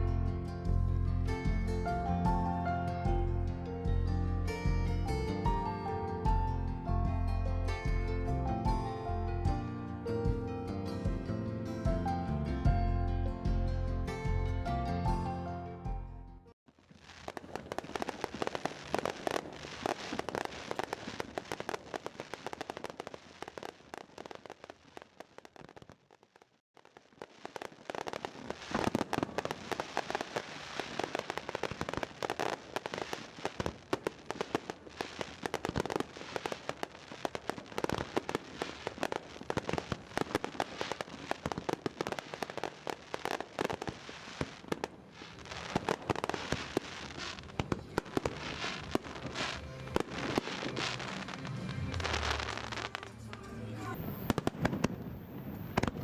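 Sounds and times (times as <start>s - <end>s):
fireworks crackling and banging: 16.7s - 56.0s.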